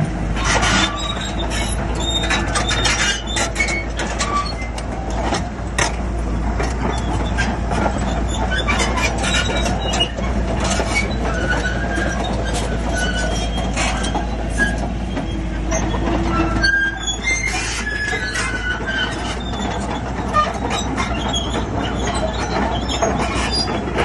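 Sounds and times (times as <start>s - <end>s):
bulldozer diesel engine hum: 0.0s - 24.0s
metallic clanks of steel tracks: 0.0s - 24.0s
high squeals of steel tracks: 0.3s - 5.2s, 6.3s - 24.0s.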